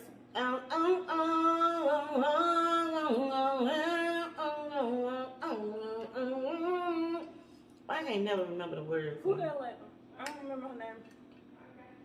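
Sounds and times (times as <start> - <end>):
woman singing unaccompanied: 0.0 - 9.6.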